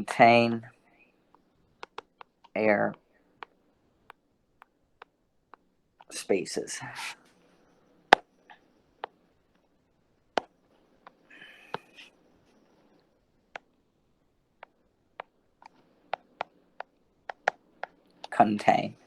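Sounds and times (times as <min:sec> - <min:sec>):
light clicks and taps: 0:01.3 - 0:06.1, 0:14.6 - 0:18.4.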